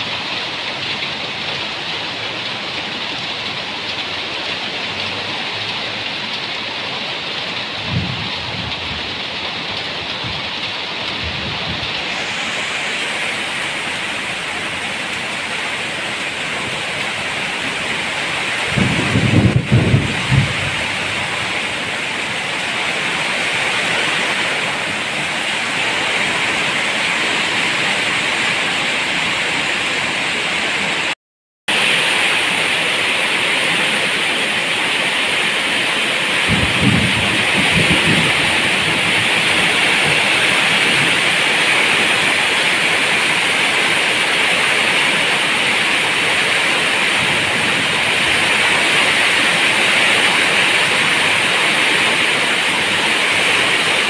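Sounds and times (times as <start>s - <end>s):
heavy rain: 0.0s - 54.0s
low rumble of thunder: 7.8s - 9.2s, 11.1s - 11.9s, 18.6s - 21.7s, 36.4s - 41.4s.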